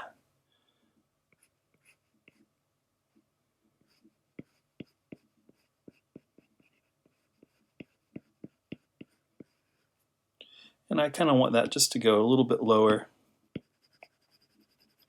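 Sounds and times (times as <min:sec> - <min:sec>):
pencil scratching on paper: 0:01.3 - 0:02.5, 0:03.8 - 0:10.1, 0:13.5 - 0:15.0
pencil ticks on paper: 0:01.3 - 0:02.5, 0:03.8 - 0:09.9, 0:13.5 - 0:15.0.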